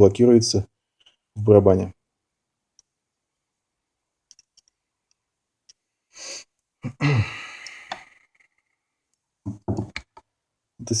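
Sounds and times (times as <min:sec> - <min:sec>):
faint clicks of small metal parts: 0:04.3 - 0:05.8
person sighing: 0:06.2 - 0:08.2.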